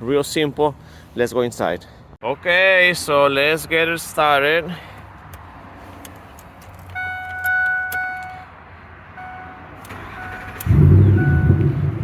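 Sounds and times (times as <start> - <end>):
engine cranking: 9.9 - 12.0
dashboard electronic chime: 11.1 - 11.7.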